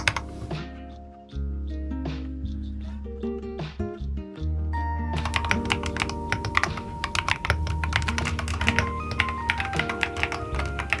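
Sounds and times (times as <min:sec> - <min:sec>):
mechanical keyboard typing: 0:00.0 - 0:00.6, 0:05.2 - 0:11.0
background music: 0:00.0 - 0:02.9, 0:04.6 - 0:11.0.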